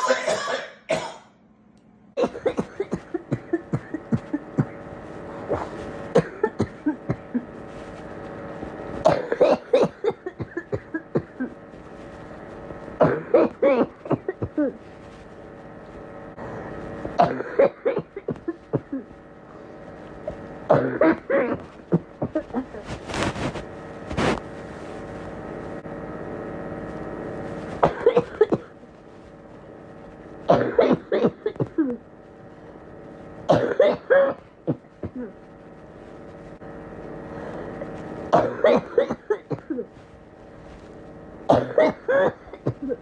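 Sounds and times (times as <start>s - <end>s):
people coughing: 0.0s - 1.4s, 2.2s - 7.6s, 9.0s - 11.6s, 13.0s - 14.8s, 17.2s - 19.1s, 20.3s - 22.8s, 27.8s - 28.7s, 30.5s - 32.0s, 33.5s - 35.4s, 38.3s - 39.9s, 41.5s - 43.0s
steady low hum: 0.0s - 43.0s.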